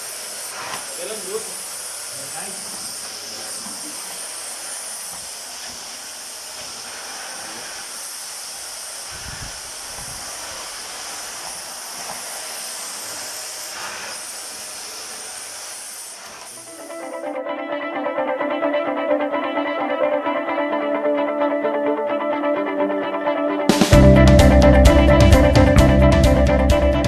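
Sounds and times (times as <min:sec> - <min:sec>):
high-pitched air hiss: 0:00.0 - 0:17.4.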